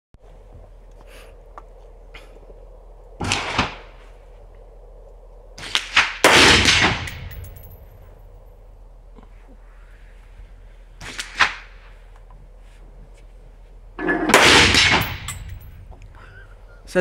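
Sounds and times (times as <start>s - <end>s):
rifle gunshots: 5.6s - 7.5s, 14.2s - 15.5s.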